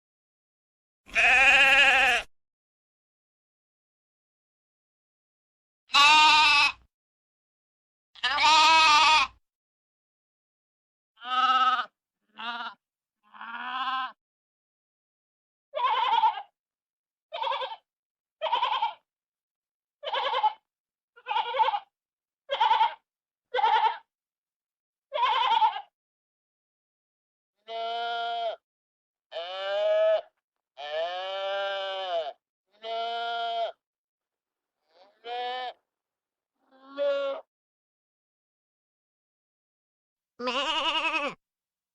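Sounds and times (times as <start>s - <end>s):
sheep bleating: 1.1s - 2.3s, 5.9s - 6.9s, 8.2s - 9.4s, 11.2s - 14.2s, 15.7s - 16.5s, 17.3s - 17.8s, 18.4s - 19.0s, 20.0s - 21.9s, 22.5s - 24.1s, 25.1s - 25.9s, 27.6s - 28.6s, 29.3s - 33.8s, 34.8s - 35.8s, 36.6s - 37.5s, 40.4s - 41.4s.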